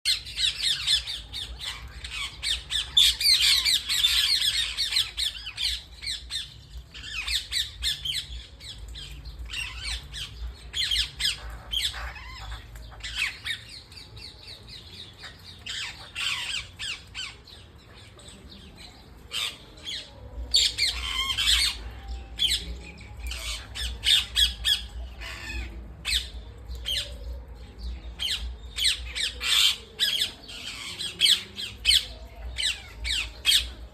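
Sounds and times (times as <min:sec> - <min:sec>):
parrots squawking and chattering: 0:00.1 - 0:14.1, 0:15.1 - 0:18.3, 0:19.2 - 0:27.5, 0:28.1 - 0:33.9.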